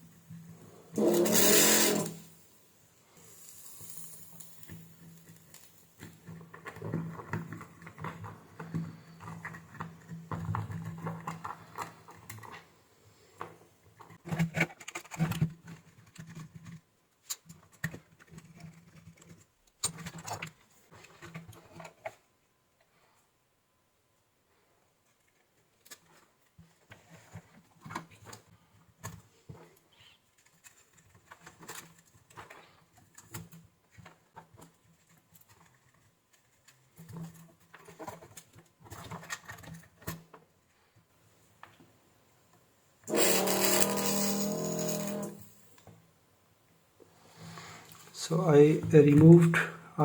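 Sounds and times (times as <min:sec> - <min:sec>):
clicks and scraping: 0:00.4 - 0:02.3, 0:43.0 - 0:46.0
loud hiss: 0:01.0 - 0:02.4, 0:43.1 - 0:45.6.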